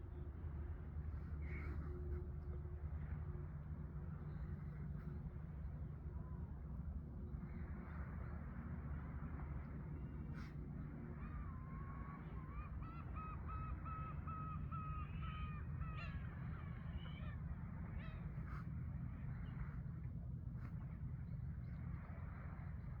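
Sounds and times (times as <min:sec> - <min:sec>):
steady low rumble: 0:15.4 - 0:23.0.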